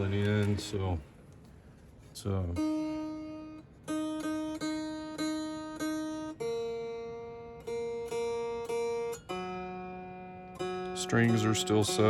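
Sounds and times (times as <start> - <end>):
electric guitar strings plucked: 2.6 - 12.0.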